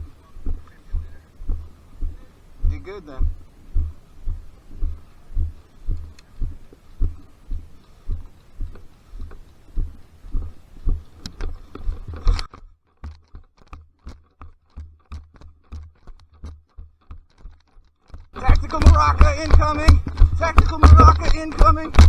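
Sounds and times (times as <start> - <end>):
footsteps thumping: 0.0 - 12.4, 18.4 - 22.0.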